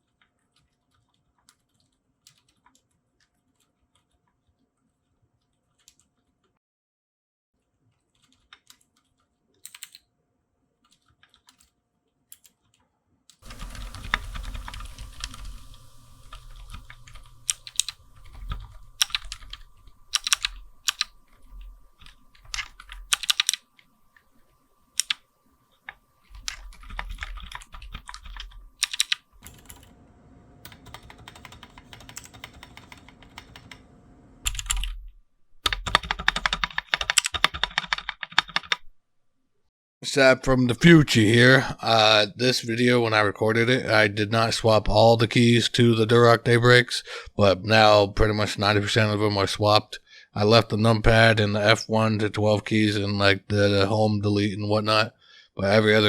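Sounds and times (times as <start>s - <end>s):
mechanical keyboard typing: 8.1s - 10.0s, 10.8s - 23.8s, 24.4s - 25.2s, 25.8s - 30.0s, 30.6s - 33.9s, 34.5s - 38.9s.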